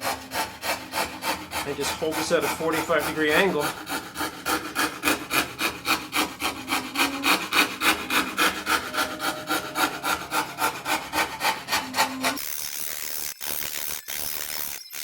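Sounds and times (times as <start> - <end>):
hand tool rubbing on wood: 0.0 - 12.4.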